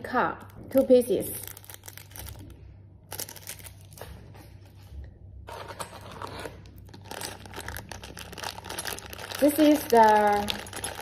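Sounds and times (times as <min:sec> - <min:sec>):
packaging crinkling: 0:01.3 - 0:04.2, 0:05.5 - 0:11.0.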